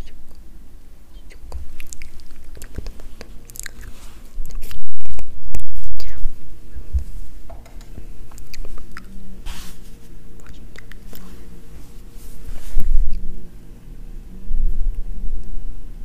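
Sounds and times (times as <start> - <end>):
mouth noises: 1.1 - 7.0
rustles: 10.9 - 13.2.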